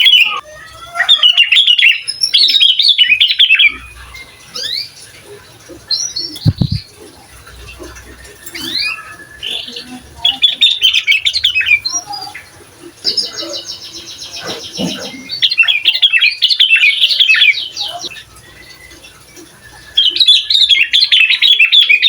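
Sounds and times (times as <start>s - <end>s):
bulbul singing: 5.9s - 7.2s.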